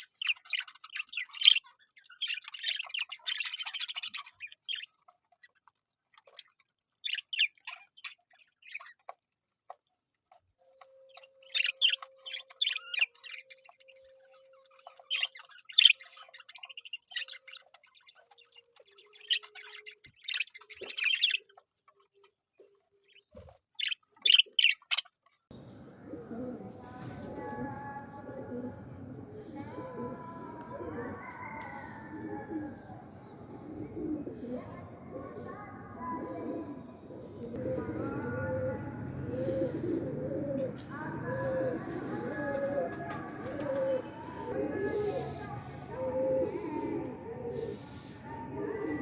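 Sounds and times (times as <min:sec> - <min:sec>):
parrot squawking and chirping: 0:11.5 - 0:14.0, 0:19.1 - 0:21.5, 0:23.8 - 0:25.1.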